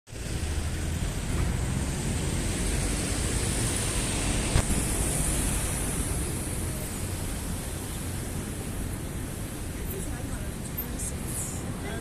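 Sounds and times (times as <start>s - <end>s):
traffic rumble: 0.1s - 12.0s.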